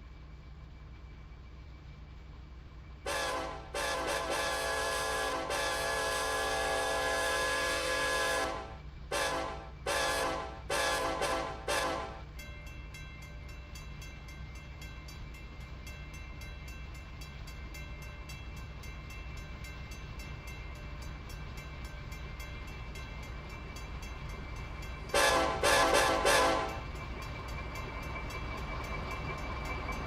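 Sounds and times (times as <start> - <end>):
railroad crossing bell ringing: 9.4 - 30.0.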